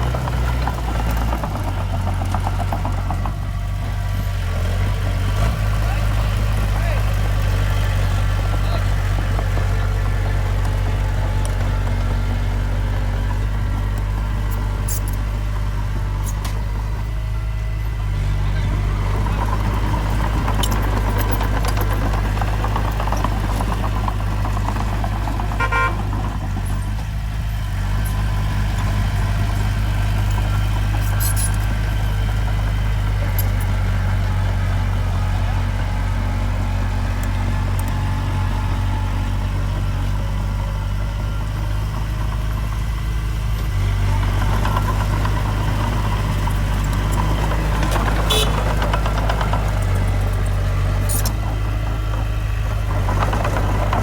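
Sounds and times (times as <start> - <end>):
diesel engine running: 0.0 - 54.0
constant low hum: 6.0 - 24.1.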